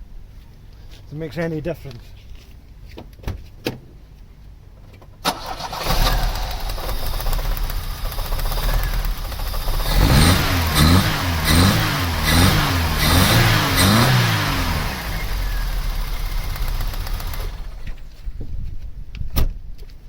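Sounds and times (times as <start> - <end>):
car engine revving and idling: 5.8 - 18.0.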